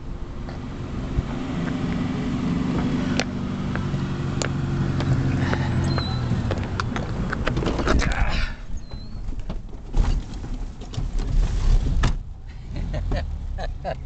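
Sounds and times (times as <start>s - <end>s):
car engine running: 0.0s - 8.2s.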